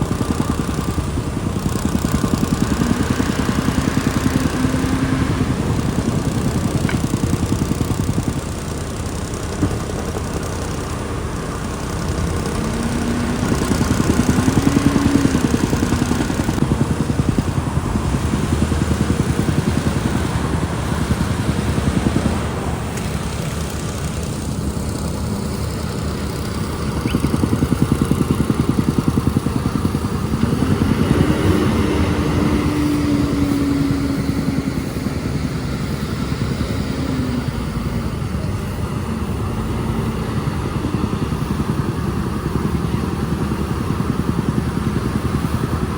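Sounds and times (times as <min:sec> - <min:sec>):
diesel engine revving: 0:00.0 - 0:45.9
rising whining tone: 0:11.2 - 0:42.8.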